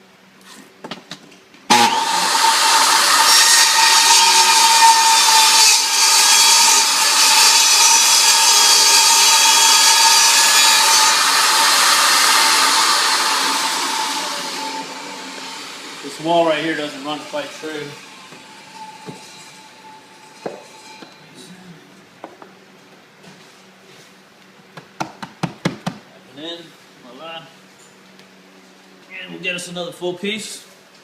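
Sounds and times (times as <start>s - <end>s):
power saw cutting floor plank: 1.7s - 21.1s.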